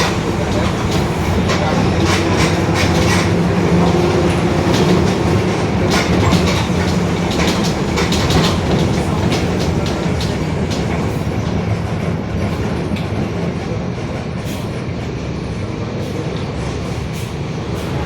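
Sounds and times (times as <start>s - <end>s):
knocks and rattles: 0.0s - 11.6s
bus differential droning: 0.0s - 13.2s.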